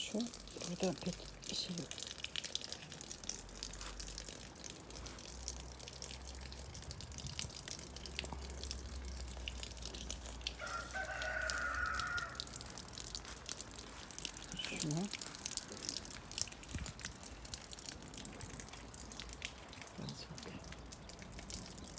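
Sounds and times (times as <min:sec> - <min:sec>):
rain dripping: 0:00.0 - 0:21.9
rooster crowing: 0:10.6 - 0:12.6.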